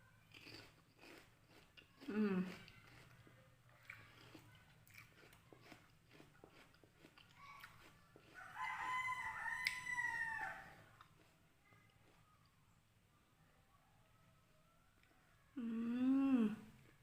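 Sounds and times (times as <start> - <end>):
person chewing: 0.2 - 8.7
rooster crowing: 8.3 - 10.9.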